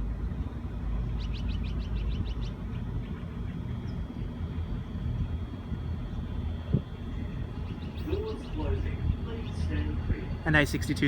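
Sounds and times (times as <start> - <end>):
freight train rumble: 0.0 - 11.0
bird chirping: 7.5 - 10.0.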